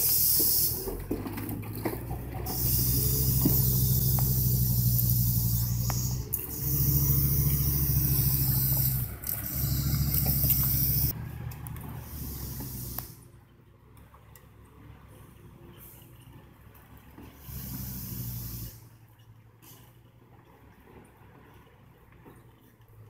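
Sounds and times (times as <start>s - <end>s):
hiss of noise: 0.0s - 0.8s, 2.5s - 11.1s
truck diesel engine running: 0.0s - 22.0s.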